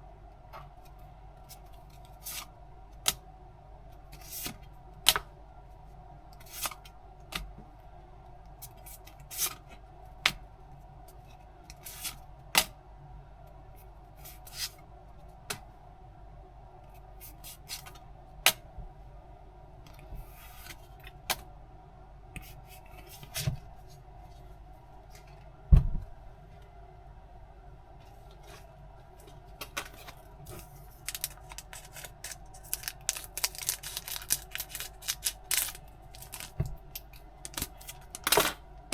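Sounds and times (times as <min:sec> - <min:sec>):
faint steady hum: 0:00.0 - 0:38.9
packaging being cut and handled: 0:30.6 - 0:38.4.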